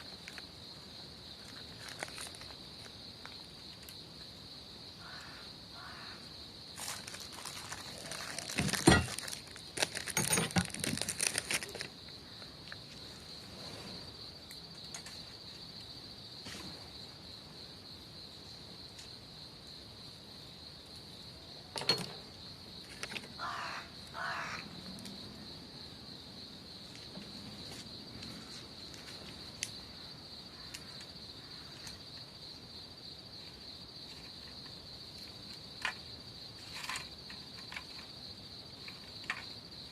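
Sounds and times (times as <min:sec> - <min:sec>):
insects trilling: 0:00.0 - 0:39.9
sharp knocks and clatter: 0:21.7 - 0:22.3.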